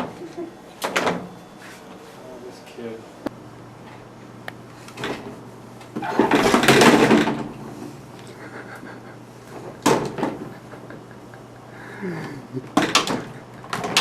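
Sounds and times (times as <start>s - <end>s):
dishwasher rack rattling clatter: 6.0s - 7.6s.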